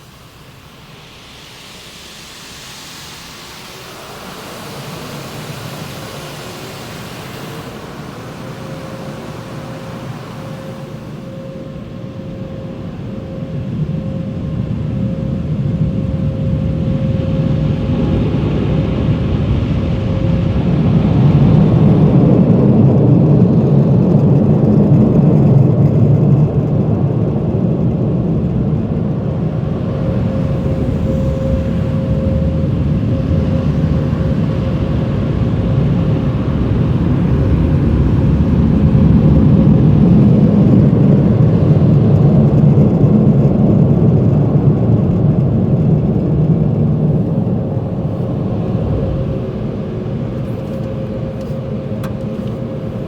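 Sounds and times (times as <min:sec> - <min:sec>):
faint steady tone: 0:00.0 - 0:23.0, 0:29.0 - 0:42.1
vehicle engine rumble: 0:03.2 - 0:53.0.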